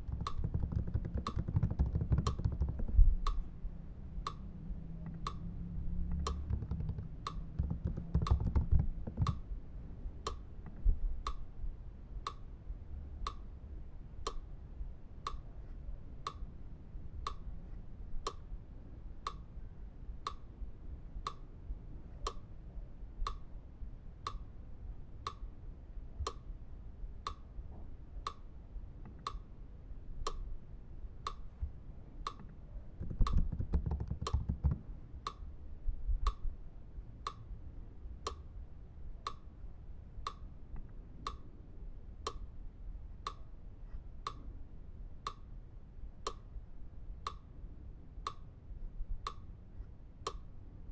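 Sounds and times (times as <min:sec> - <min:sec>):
clock ticking: 0:00.0 - 0:03.4, 0:06.1 - 0:09.4, 0:33.0 - 0:35.4.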